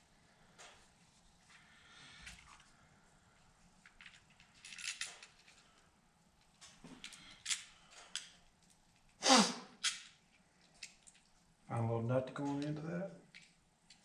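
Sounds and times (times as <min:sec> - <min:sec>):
small parts clicking and rattling: 0:03.8 - 0:09.2, 0:09.8 - 0:11.4, 0:13.3 - 0:14.0.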